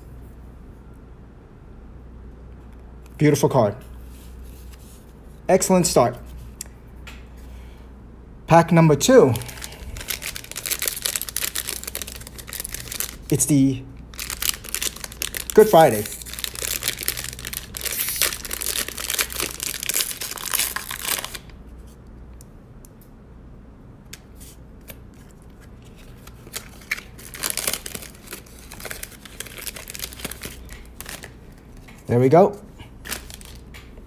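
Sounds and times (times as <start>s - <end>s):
cards rustling: 9.2s - 21.6s, 24.4s - 32.1s, 32.8s - 34.0s
wrapper tearing and crinkling: 9.3s - 13.5s, 14.1s - 21.6s, 25.6s - 31.8s, 32.9s - 33.8s.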